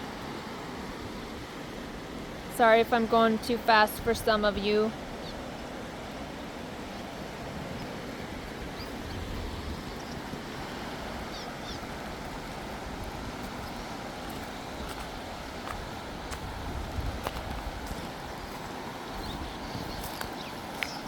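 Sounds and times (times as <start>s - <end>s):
river rushing: 0.0s - 21.0s
swallows chirping: 8.7s - 10.3s, 19.0s - 21.0s.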